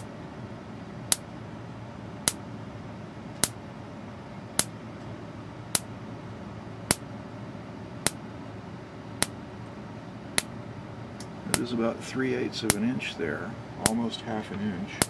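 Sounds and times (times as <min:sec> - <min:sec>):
faint steady hiss: 0:00.0 - 0:15.0
spark gap snapping: 0:12.6 - 0:12.9.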